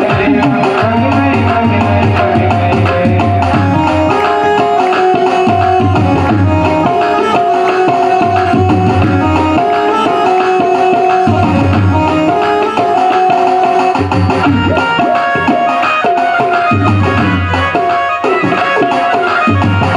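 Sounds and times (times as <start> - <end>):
tabla rhythm: 0.0 - 19.9
long held melody notes: 3.2 - 16.1.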